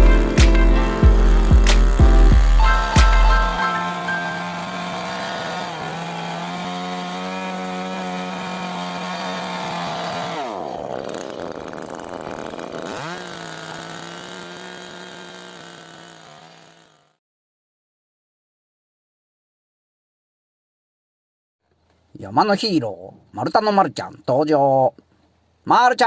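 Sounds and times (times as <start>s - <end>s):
chainsaw cutting wood: 0.0s - 17.2s
chainsaw running: 0.0s - 17.2s.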